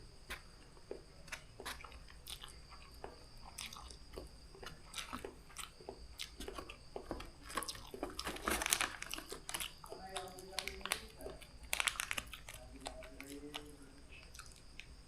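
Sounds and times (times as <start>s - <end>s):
slurping and chewing noodles: 0.2s - 10.4s
wet clicks and crunches: 0.2s - 15.0s.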